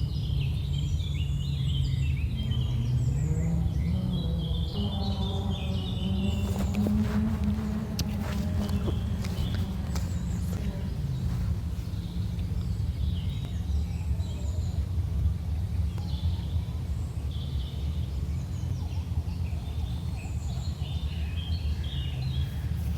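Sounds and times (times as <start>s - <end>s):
birds chirping and calling: 0.0s - 14.9s
steady low rumble: 0.0s - 22.9s.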